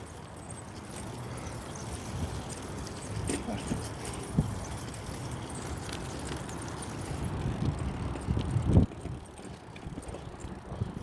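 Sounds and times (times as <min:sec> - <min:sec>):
wind rumble on phone microphone: 0:06.5 - 0:11.0.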